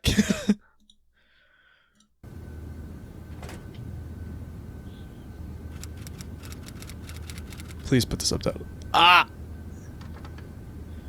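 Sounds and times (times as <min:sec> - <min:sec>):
faint high whine: 0:02.2 - 0:11.0
low hum and hiss: 0:02.2 - 0:11.0.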